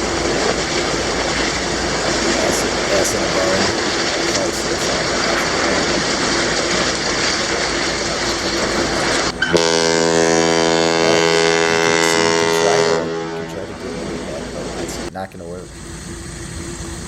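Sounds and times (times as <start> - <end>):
steady rushing noise: 0.0 - 15.1
ship's horn long blast: 8.8 - 15.1.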